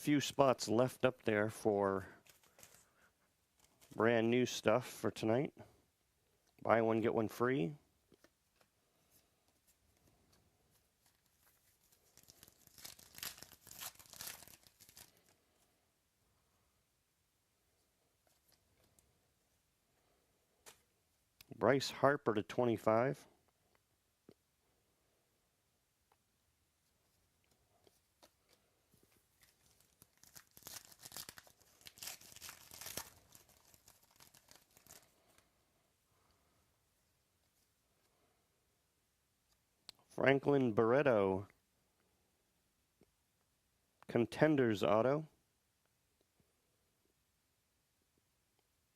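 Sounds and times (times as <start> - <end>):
plastic wrapper crinkling and tearing: 2.2 - 3.0, 10.7 - 15.4, 27.9 - 35.4.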